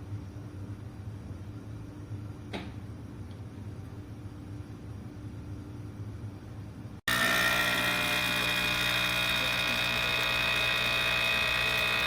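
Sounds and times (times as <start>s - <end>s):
espresso machine pump buzzing: 7.1s - 12.0s.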